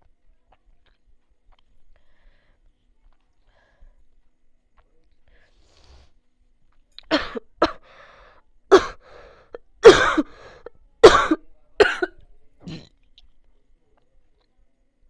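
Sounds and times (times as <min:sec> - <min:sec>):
person coughing: 0:07.1 - 0:07.9, 0:09.8 - 0:10.4, 0:11.0 - 0:12.1.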